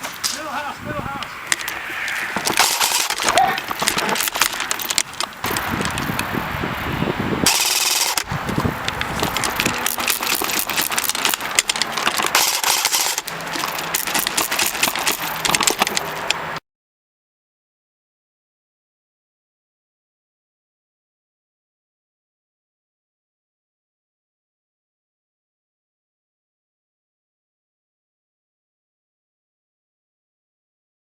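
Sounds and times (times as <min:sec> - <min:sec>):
airsoft gun firing rapid bursts: 0:02.6 - 0:04.6, 0:07.5 - 0:08.3, 0:09.3 - 0:16.2.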